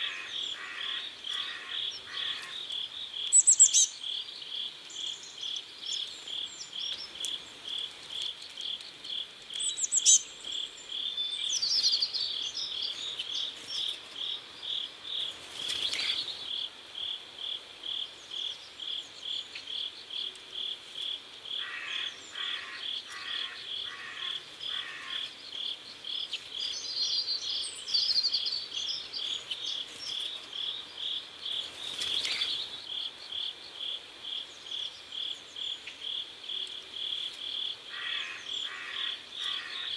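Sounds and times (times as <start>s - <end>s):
bird chirps: 0.0s - 7.3s, 9.6s - 13.9s
crickets chirping: 0.0s - 39.9s.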